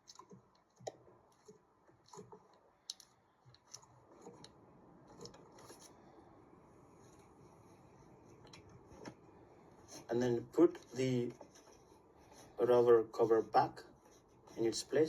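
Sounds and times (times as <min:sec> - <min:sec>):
plastic clicks and scrapes: 0:00.0 - 0:06.0.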